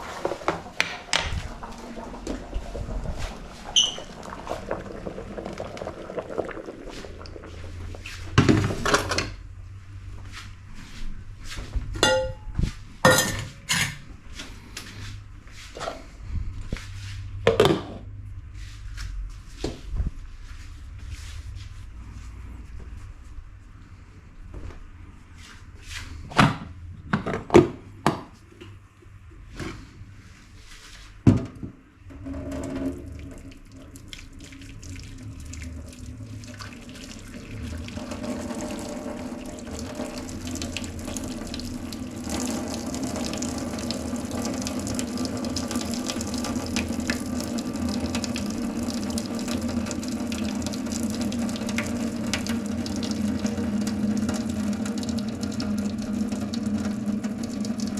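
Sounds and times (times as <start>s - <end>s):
water running from tap: 1.0s - 7.8s, 32.9s - 57.9s
kitchenware knocking: 12.0s - 12.5s.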